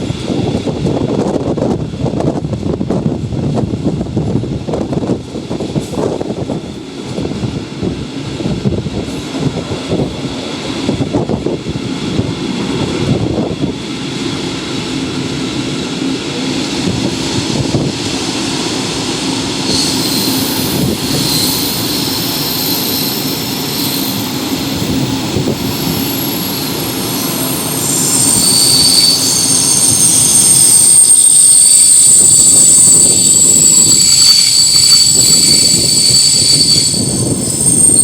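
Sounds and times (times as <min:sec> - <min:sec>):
train rumbling on rails: 0:00.0 - 0:38.0
high-pitched brake squeal: 0:19.6 - 0:38.0.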